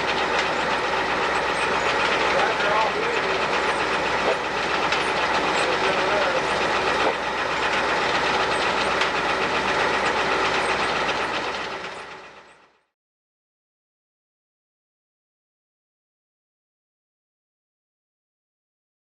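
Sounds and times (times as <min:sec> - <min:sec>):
mechanical running noise: 0:00.0 - 0:12.9
faint voices: 0:02.0 - 0:04.3, 0:05.2 - 0:07.2.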